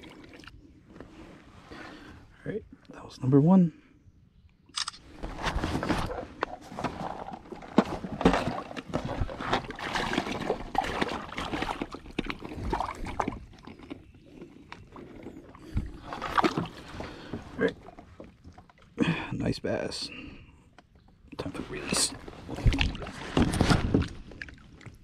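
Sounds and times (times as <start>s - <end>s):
knocks and rustling of gear: 4.8s - 9.7s
water sloshing: 5.7s - 19.0s, 21.2s - 25.0s.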